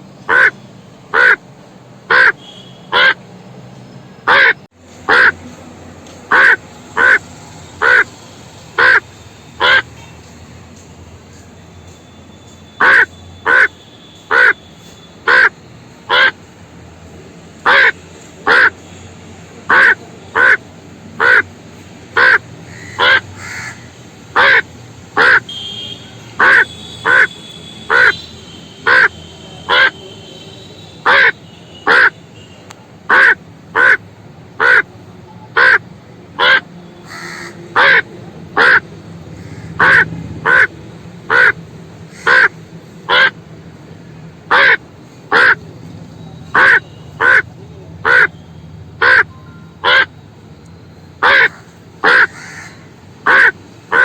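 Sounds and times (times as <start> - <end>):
crow cawing: 0.3 - 0.5, 1.2 - 1.4, 2.1 - 3.2, 4.3 - 5.4, 6.3 - 7.2, 7.8 - 8.1, 8.8 - 9.0, 9.6 - 9.9, 12.8 - 13.7, 14.3 - 14.6, 15.3 - 15.5, 16.1 - 16.4, 17.7 - 18.8, 19.7 - 20.6, 21.2 - 21.5, 22.2 - 25.6, 26.4 - 28.2, 28.8 - 30.0, 31.1 - 32.2, 33.1 - 34.0, 34.6 - 34.9, 35.5 - 35.8, 36.4 - 40.7, 41.3 - 43.4, 44.5 - 45.6, 46.5 - 48.4, 49.0 - 50.1, 51.2 - 54.0.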